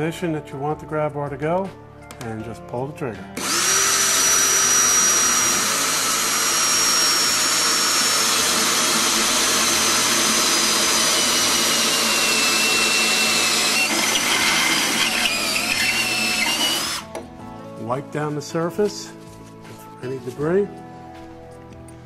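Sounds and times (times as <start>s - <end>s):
power drill boring through tile: 3.4s - 17.2s.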